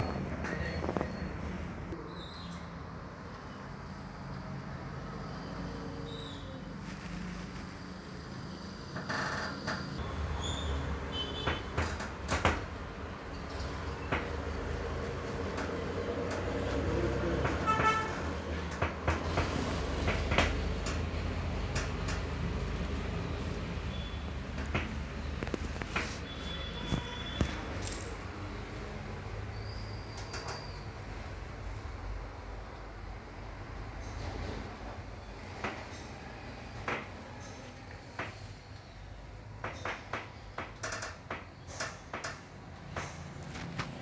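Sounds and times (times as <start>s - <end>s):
vehicle horn toot: 11.1s - 11.7s, 17.6s - 18.2s, 26.2s - 27.7s
scattered clicks and knocks: 11.4s - 14.4s, 17.4s - 22.4s, 24.5s - 28.1s, 39.5s - 44.0s.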